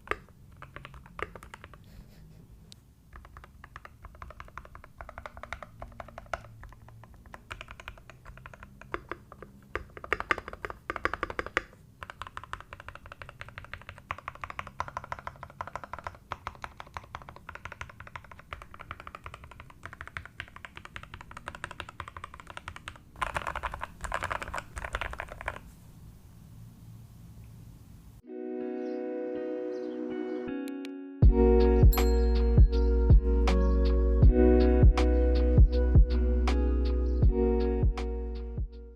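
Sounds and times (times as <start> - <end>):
typing on mechanical keyboard: 0.0 - 2.1, 3.1 - 25.7.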